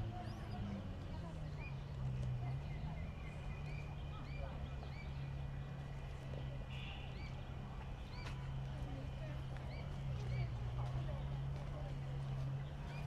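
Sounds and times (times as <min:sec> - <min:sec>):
birds chirping: 0:00.0 - 0:13.0.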